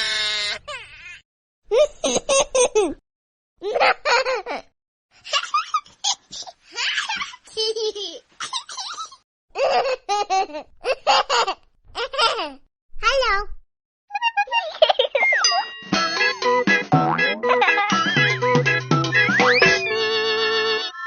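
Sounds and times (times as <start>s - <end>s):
baby giggling: 5.3s - 12.6s, 14.6s - 15.7s.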